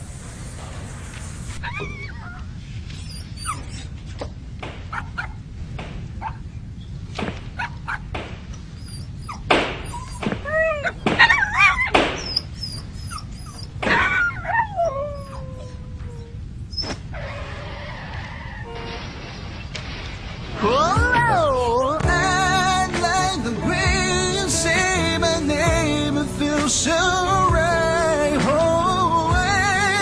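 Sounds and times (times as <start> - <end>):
puppy howling and whining: 1.6 - 4.0, 8.8 - 17.8.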